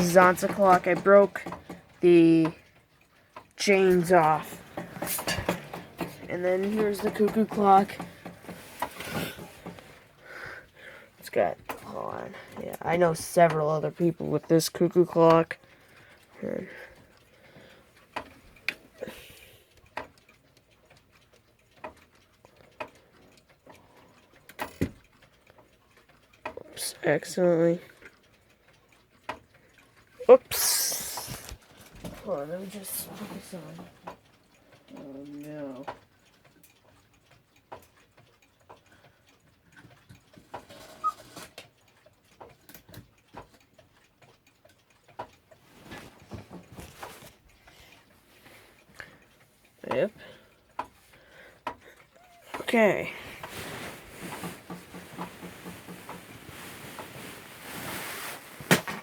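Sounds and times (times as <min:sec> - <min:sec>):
handling clatter and knocks: 0:00.0 - 0:02.5, 0:03.6 - 0:10.0, 0:53.5 - 0:59.0
mechanical clock ticking: 0:00.0 - 0:57.4.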